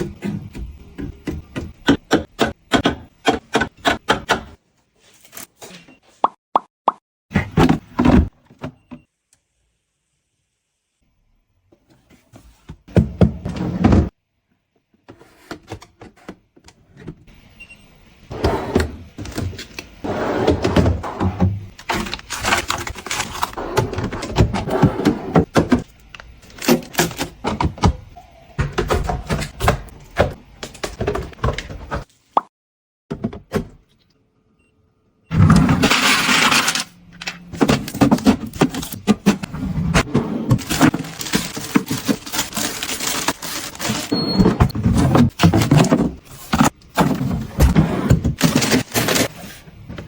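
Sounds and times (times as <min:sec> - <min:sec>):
household items clicking and clinking: 0:40.1 - 0:49.4.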